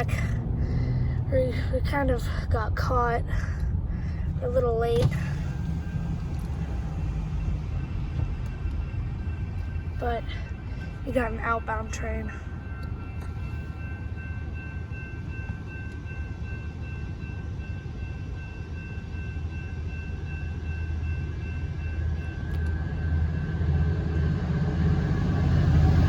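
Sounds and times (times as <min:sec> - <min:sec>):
train rumble: 0:00.0 - 0:26.0
high-pitched ringing tone: 0:05.2 - 0:26.0.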